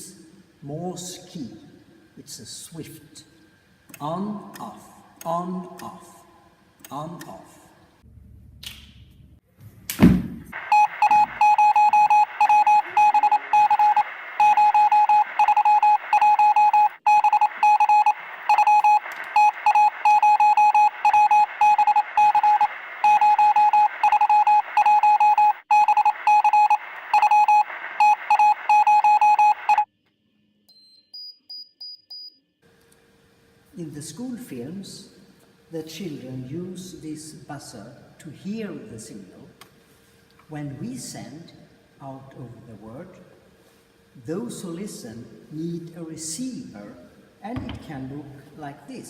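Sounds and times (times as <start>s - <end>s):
thump: 10.0s - 10.5s
morse code buzzer tone: 10.6s - 29.9s.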